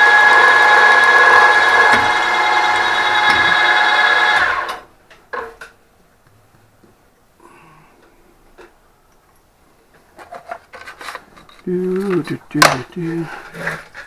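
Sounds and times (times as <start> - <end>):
machine tool whining: 0.0 - 4.8.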